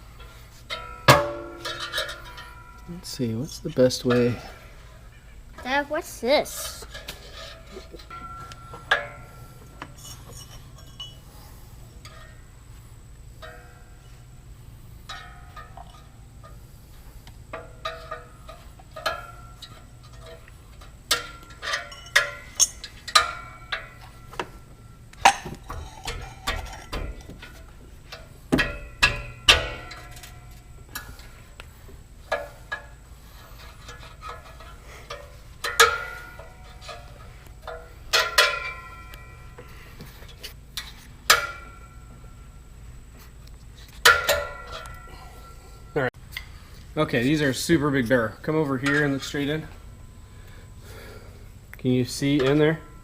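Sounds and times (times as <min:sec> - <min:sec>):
tools clinking on metal: 0:00.2 - 0:04.6, 0:06.5 - 0:11.3, 0:17.5 - 0:31.4, 0:33.6 - 0:42.4.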